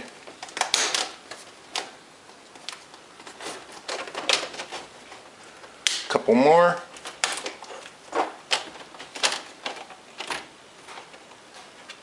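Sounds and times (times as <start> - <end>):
plastic clips snapping: 0.3 - 4.8, 5.8 - 6.1.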